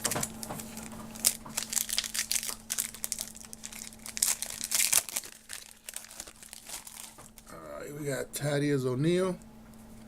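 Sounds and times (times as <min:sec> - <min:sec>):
wrapper tearing and crinkling: 0:00.7 - 0:07.5.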